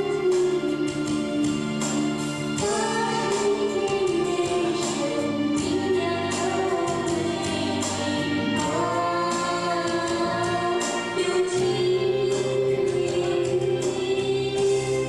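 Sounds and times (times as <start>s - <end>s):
person singing: 0.0s - 1.8s, 2.6s - 15.0s
karaoke backing music: 0.0s - 15.0s.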